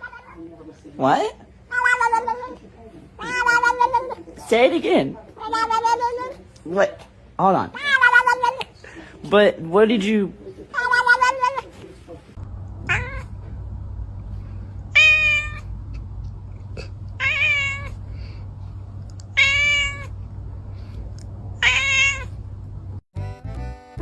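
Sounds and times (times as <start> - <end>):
cat meowing: 0.0 - 0.5, 1.7 - 2.6, 3.2 - 4.4, 5.4 - 6.4, 7.7 - 8.7, 10.7 - 11.8, 12.8 - 13.3, 14.9 - 15.7, 17.2 - 18.0, 19.3 - 20.2, 21.6 - 22.4
steady low hum: 11.9 - 24.0.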